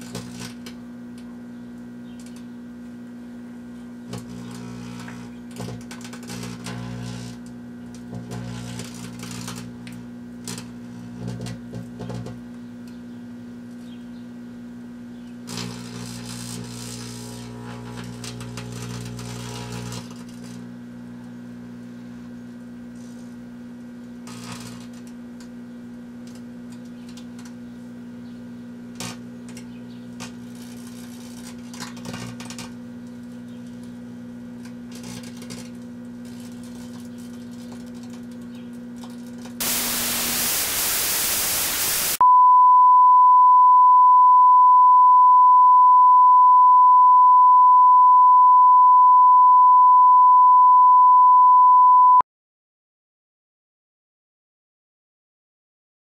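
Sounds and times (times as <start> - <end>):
microwave oven humming: 0.0 - 30.6
firework crackling and fizzing: 39.6 - 42.2
loud burst of hiss: 39.6 - 42.2.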